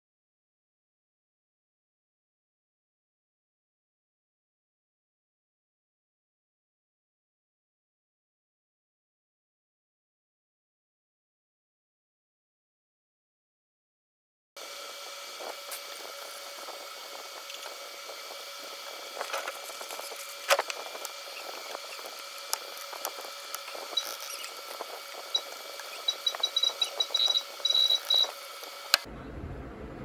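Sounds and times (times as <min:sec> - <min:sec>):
high-pitched electrical whine: 0:14.6 - 0:29.1.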